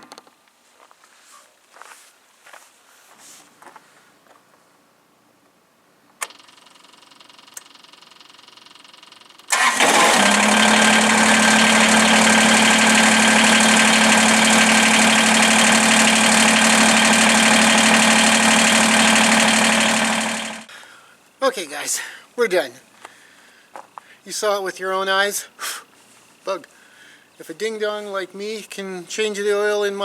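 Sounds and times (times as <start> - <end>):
diesel engine starting and running: 9.5 - 20.7.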